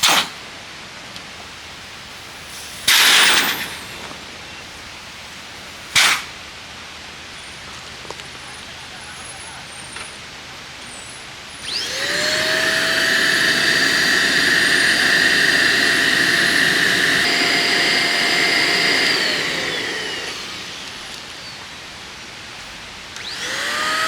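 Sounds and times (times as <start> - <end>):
electric air pump whirring: 1.6 - 4.4, 11.4 - 24.0.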